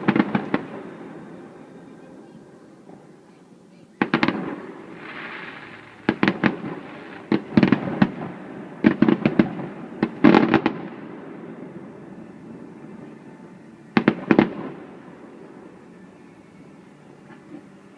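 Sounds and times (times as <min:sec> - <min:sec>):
fireworks bursting with sharp bangs: 0:00.0 - 0:15.9
rushing hiss: 0:04.0 - 0:10.1.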